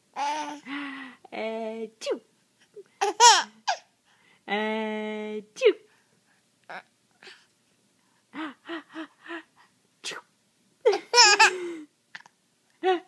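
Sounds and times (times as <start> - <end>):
baby laughing: 3.0 - 3.8, 10.9 - 12.3.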